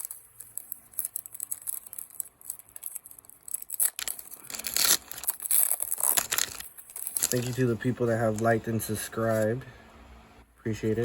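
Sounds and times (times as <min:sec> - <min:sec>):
foil wrapper tearing and crinkling: 0:00.0 - 0:08.5.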